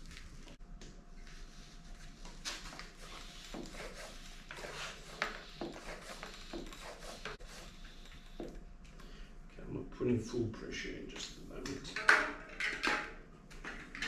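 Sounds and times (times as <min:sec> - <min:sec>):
bicycle pump strokes: 0:01.2 - 0:09.2.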